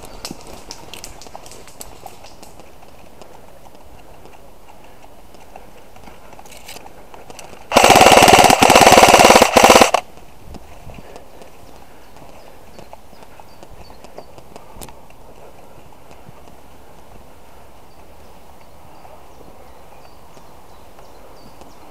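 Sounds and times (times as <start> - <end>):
airsoft rifle firing full-auto: 7.7 - 10.0.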